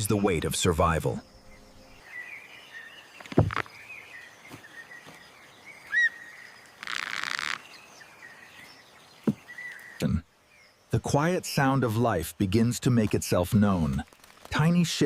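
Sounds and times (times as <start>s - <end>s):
faint bird chirps: 0.0s - 11.1s
rising and falling bird call: 1.2s - 10.0s
short thumps: 3.2s - 3.7s.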